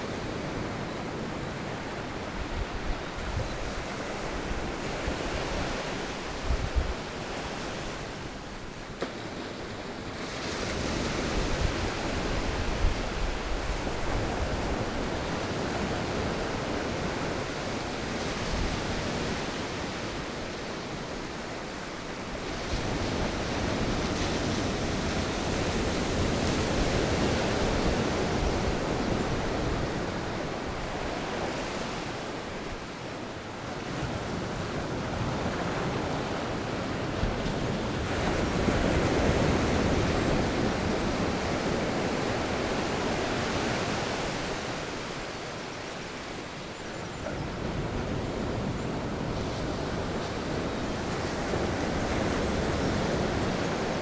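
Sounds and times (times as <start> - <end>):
wind: 0.0 - 54.0.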